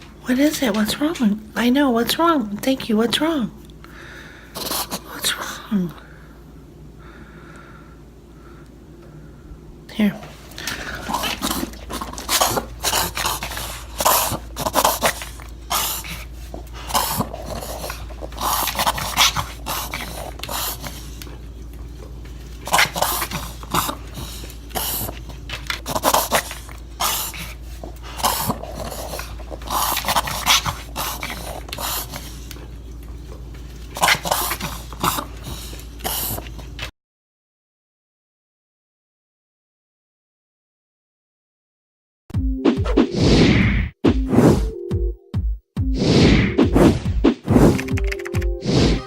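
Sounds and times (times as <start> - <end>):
dog reverse sneezing snorts: 4.5 - 5.2, 10.6 - 21.2, 22.7 - 25.2, 34.0 - 36.6, 46.0 - 47.9.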